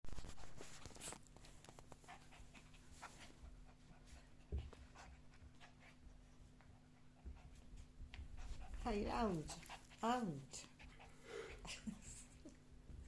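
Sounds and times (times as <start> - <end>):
dog panting: 1.8 - 12.6.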